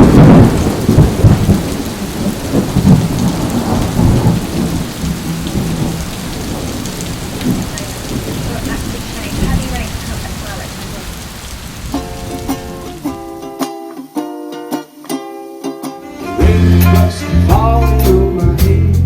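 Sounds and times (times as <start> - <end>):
rolling thunder: 0.0 - 13.4
steady rain: 0.0 - 13.6.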